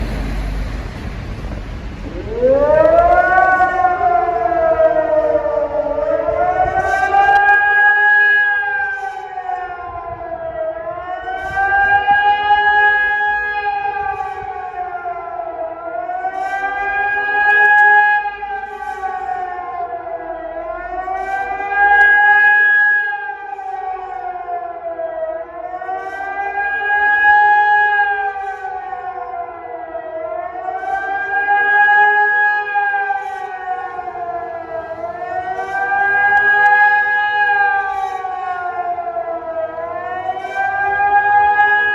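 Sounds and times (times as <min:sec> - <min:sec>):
wailing warning siren: 0:00.0 - 0:41.9.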